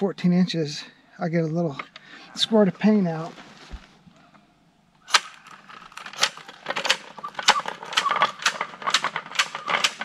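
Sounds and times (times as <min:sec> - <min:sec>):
marking wheel clicking and rattling: 0:05.5 - 0:10.0.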